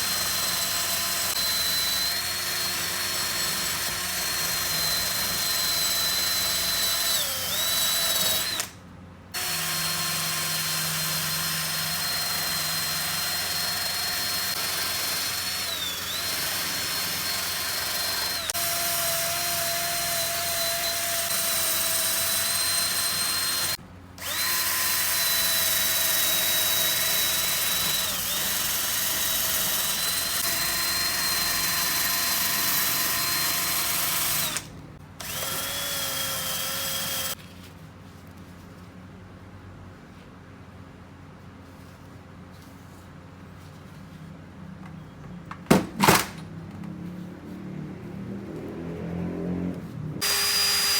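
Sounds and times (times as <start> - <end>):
electric power tool whine: 0.0 - 8.8, 9.4 - 37.4, 50.2 - 50.9.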